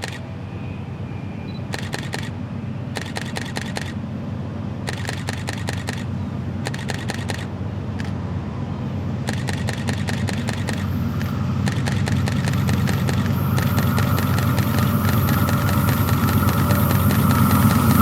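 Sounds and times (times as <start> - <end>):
rapid sharp clicking: 0.0 - 0.2, 1.7 - 2.4, 3.0 - 4.0, 4.9 - 8.2, 9.2 - 18.0
locomotive engine rumble: 0.0 - 18.0.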